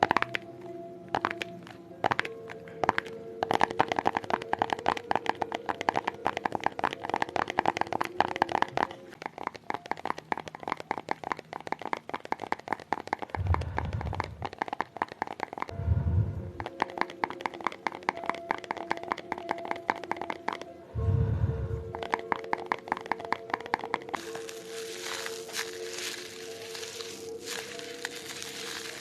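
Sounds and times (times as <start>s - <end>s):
rapid tapping on hard object: 0.0s - 0.4s, 1.1s - 15.7s, 16.6s - 20.7s, 21.9s - 29.0s
low rumble: 13.4s - 14.4s, 15.7s - 16.6s, 21.0s - 22.0s.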